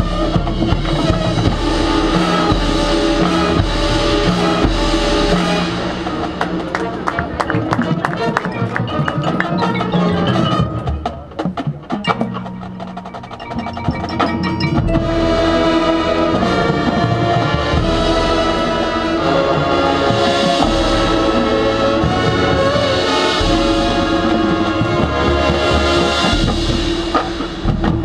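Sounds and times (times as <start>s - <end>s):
bass drums: 0.0s - 9.5s, 11.2s - 28.0s
marching band chords: 0.0s - 28.0s
sharp percussion and mallet hits: 0.8s - 16.2s.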